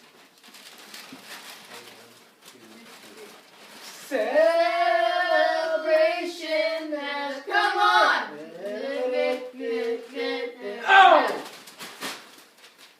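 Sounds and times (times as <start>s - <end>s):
young voice singing: 4.0s - 11.5s.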